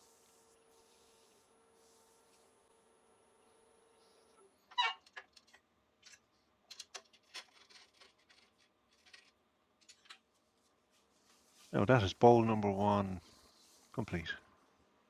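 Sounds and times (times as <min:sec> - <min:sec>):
objects clicking and tapping: 0:05.1 - 0:10.3.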